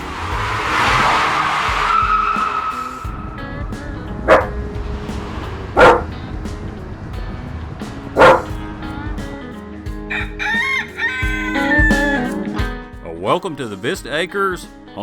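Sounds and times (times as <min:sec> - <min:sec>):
background music: 0:00.0 - 0:15.0
dog barking: 0:04.3 - 0:04.5, 0:05.8 - 0:06.1, 0:08.2 - 0:08.5.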